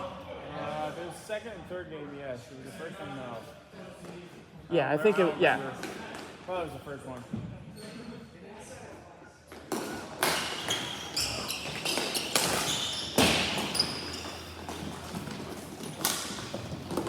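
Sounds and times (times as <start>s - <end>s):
hockey sticks cracking on ball: 9.5s - 17.0s
high squeaks: 10.5s - 16.4s.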